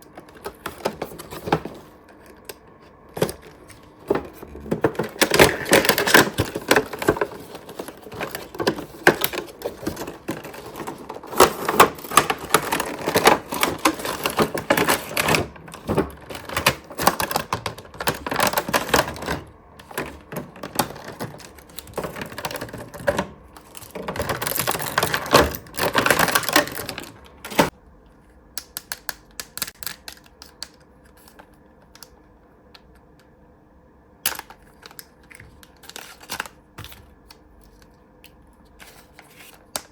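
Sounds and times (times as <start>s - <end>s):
plastic and cardboard crackling: 0.0s - 27.8s, 34.3s - 38.0s.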